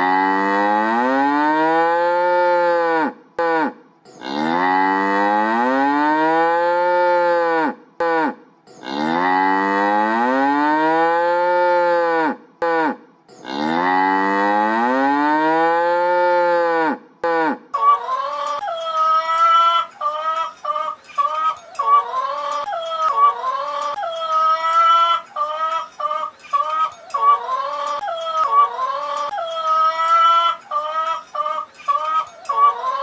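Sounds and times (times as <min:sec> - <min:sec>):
cow mooing: 0:00.0 - 0:17.6.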